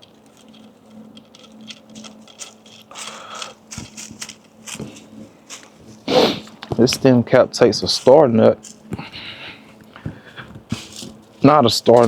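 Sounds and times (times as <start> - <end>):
small bicycle parts clicking: 0.0 - 4.9
short rustle: 0.3 - 7.2, 7.8 - 12.0.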